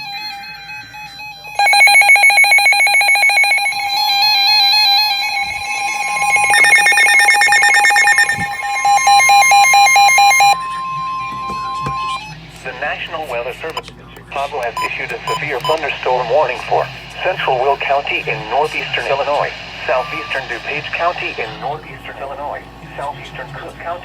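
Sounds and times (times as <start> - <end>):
steady warning alarm tone: 0.0 - 12.3, 14.7 - 24.0
electronic alert beeps and warbling: 1.6 - 10.6.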